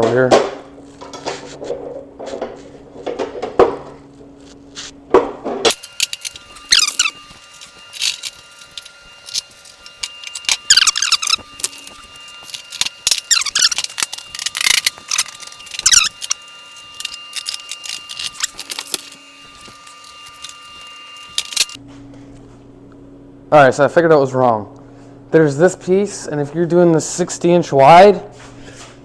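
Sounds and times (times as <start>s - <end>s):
metal parts clinking and scraping: 5.7s - 21.8s
sharp metal squeals: 5.7s - 21.8s.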